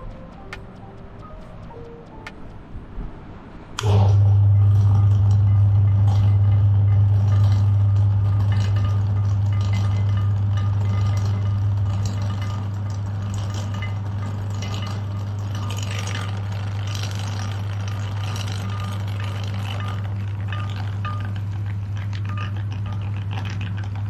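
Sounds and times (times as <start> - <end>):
meat grinder motor humming: 3.8 - 24.0
small clinks and rattles: 7.2 - 24.0.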